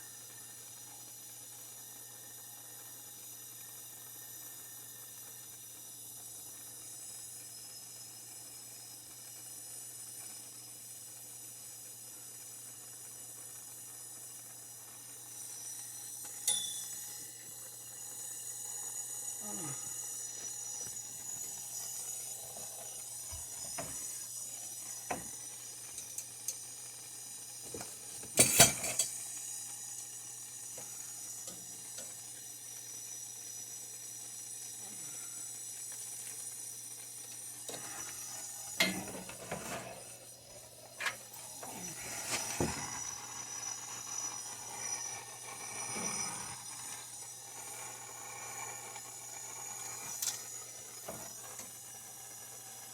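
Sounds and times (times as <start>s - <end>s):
faint hiss: 17.1s - 52.9s.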